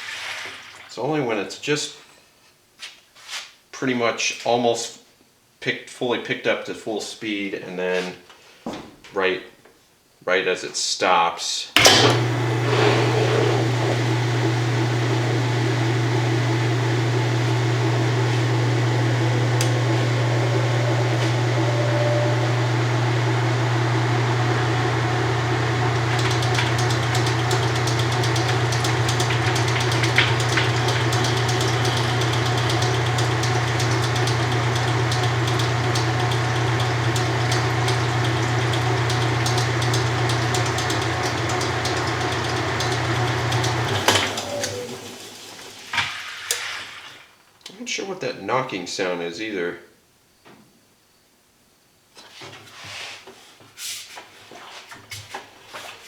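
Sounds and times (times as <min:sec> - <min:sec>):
washing machine motor hum: 0:11.8 - 0:46.2.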